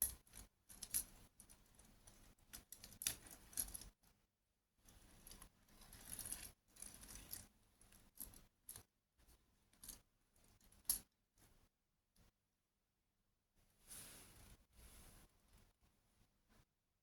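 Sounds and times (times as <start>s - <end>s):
small hard toys clicking and rattling: 5.2s - 7.4s.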